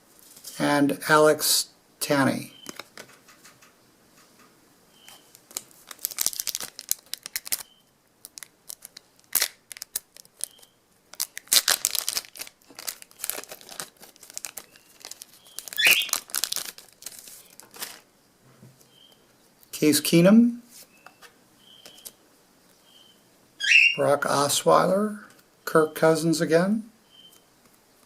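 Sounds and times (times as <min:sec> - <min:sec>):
card wrappers tearing and crinkling: 0:05.3 - 0:18.1.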